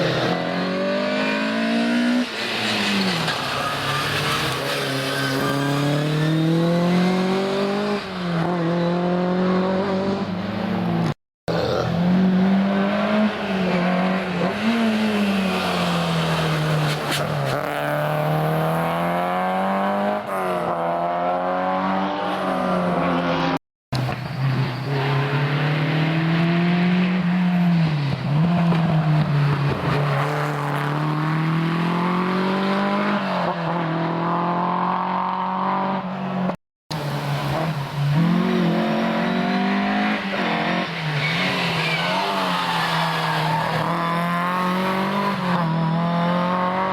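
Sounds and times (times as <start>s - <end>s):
rally car engines revving: 0.0s - 36.2s, 36.9s - 46.9s.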